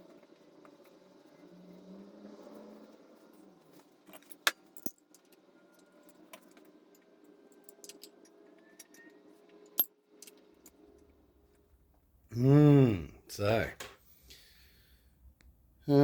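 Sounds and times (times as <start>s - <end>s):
metal tools clinking: 3.7s - 10.8s.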